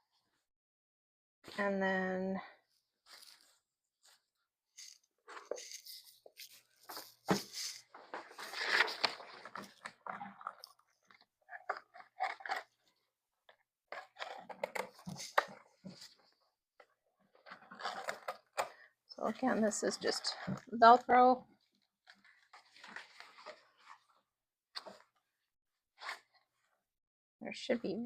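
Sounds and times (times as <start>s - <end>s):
fabric and plastic rustling: 2.7s - 12.9s.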